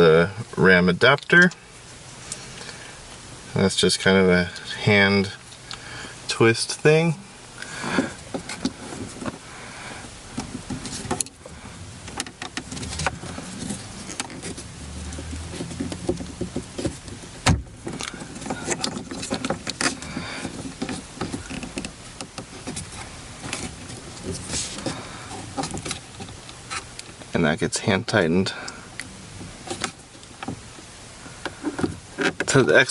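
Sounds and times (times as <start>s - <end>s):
mount parts clicking and scraping: 10.3s - 27.3s, 28.6s - 32.9s.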